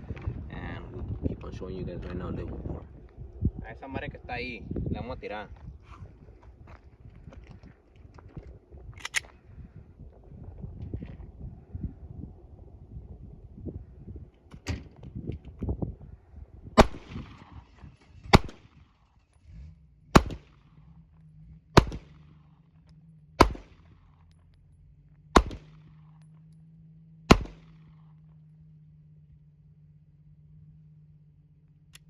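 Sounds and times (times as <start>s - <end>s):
gun handling clicks: 9.0s - 9.4s
pistol shots: 16.8s - 18.9s, 20.1s - 20.7s, 21.8s - 22.4s, 23.4s - 24.0s, 25.3s - 26.3s, 27.3s - 28.1s.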